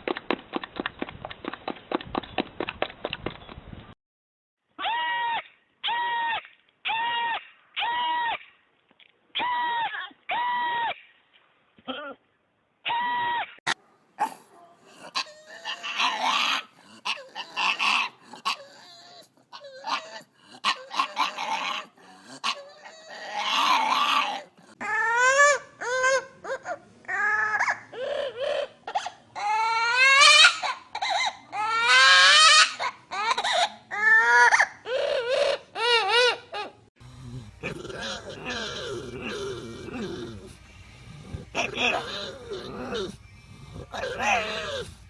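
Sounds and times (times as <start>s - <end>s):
dog whining and crying: 15.0s - 36.8s, 37.6s - 45.0s.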